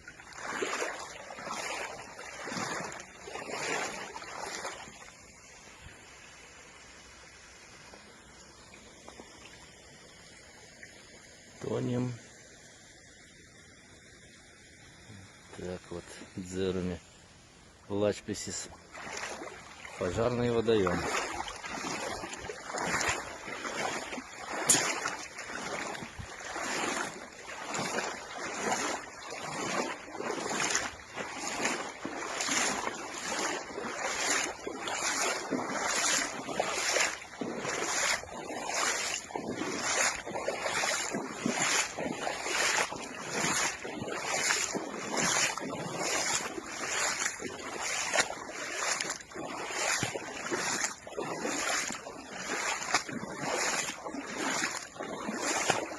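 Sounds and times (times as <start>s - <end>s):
waves washing: 0.0s - 5.4s, 18.4s - 55.9s.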